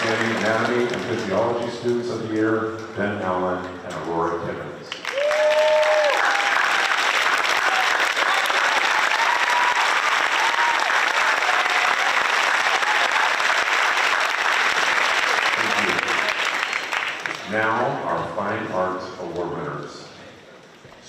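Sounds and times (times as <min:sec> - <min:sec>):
audience applauding: 0:00.0 - 0:02.2, 0:04.9 - 0:17.9.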